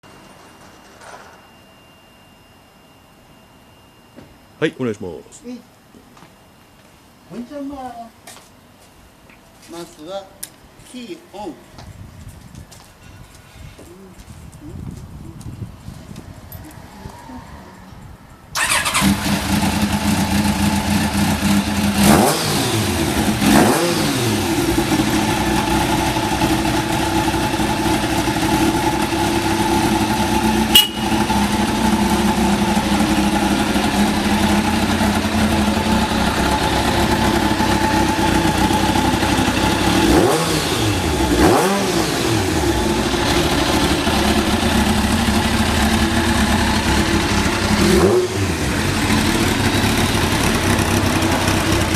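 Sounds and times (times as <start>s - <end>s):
motorcycle engine idling: 18.6s - 22.0s, 24.5s - 41.3s, 42.4s - 51.9s
engine revving: 18.6s - 51.9s.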